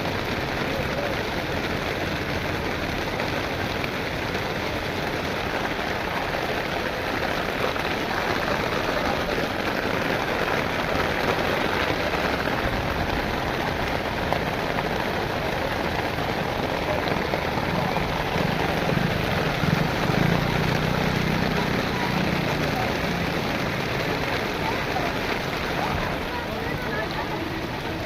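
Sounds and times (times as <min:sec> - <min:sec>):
heavy rain pouring: 0:00.0 - 0:28.0.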